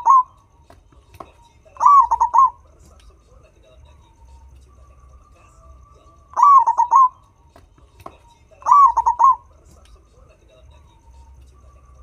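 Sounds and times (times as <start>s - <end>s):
turtledove cooing: 0.0s - 0.4s, 1.8s - 2.7s, 6.2s - 7.2s, 8.6s - 9.5s.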